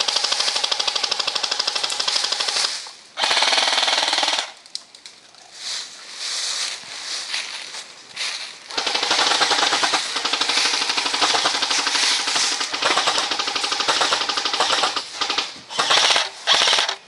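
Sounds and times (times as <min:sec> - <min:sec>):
airsoft gun firing bursts: 0:00.0 - 0:04.6, 0:08.7 - 0:17.0.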